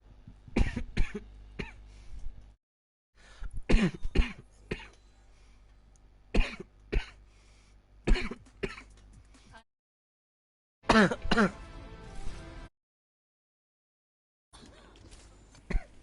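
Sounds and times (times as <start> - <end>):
person coughing hard: 0.6 - 1.8, 3.7 - 4.9, 6.4 - 7.2, 8.1 - 8.9, 10.9 - 11.6, 15.7 - 16.0.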